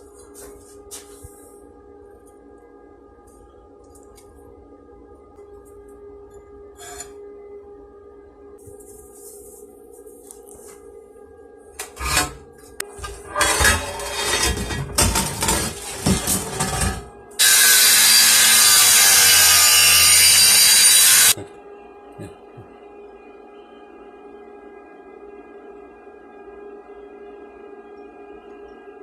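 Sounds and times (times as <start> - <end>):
metal scraping and clattering: 11.8 - 21.3
power tool on metal: 13.0 - 21.4.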